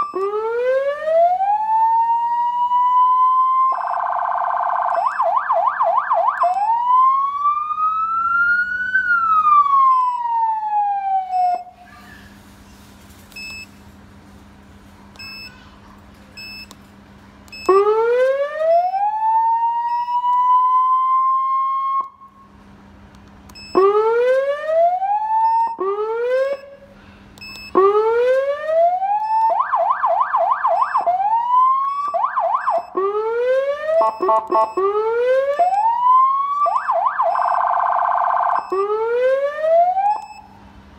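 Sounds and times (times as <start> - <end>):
electronic siren wail: 0.0 - 11.8, 17.7 - 22.3, 23.7 - 26.8, 27.7 - 40.5
siren whoops and yelps: 0.0 - 12.2, 17.7 - 22.4, 23.7 - 26.8, 27.7 - 40.5.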